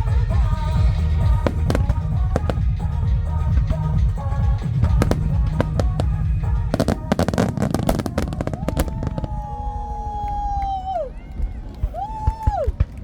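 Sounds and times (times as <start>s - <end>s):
music playing: 0.0s - 9.7s
fireworks bangs and crackling: 0.0s - 13.0s.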